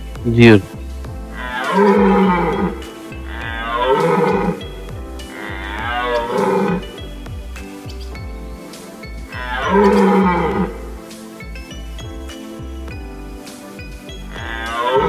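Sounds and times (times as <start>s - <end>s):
light background music: 0.0s - 15.0s
deer roaring: 1.3s - 7.1s, 9.3s - 11.0s, 14.4s - 15.0s.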